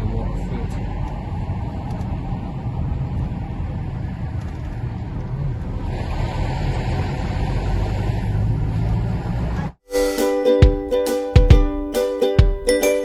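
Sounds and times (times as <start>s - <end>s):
car engine and road noise: 0.0s - 9.8s.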